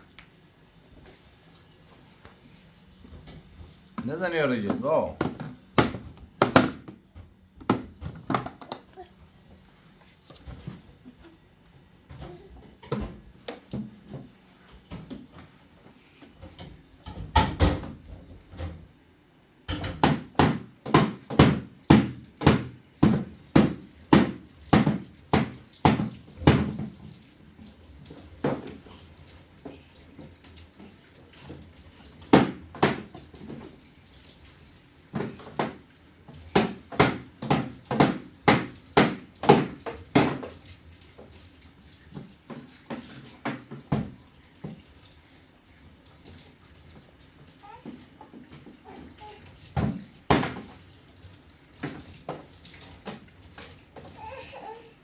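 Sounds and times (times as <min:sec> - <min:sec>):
repeated knocks or slaps: 0:19.7 - 0:26.7, 0:36.6 - 0:40.5.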